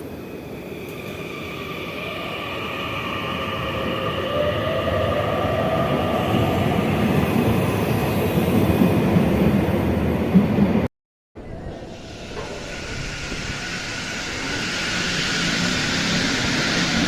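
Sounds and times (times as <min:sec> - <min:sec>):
train running gear rumbling: 0:11.9 - 0:17.0.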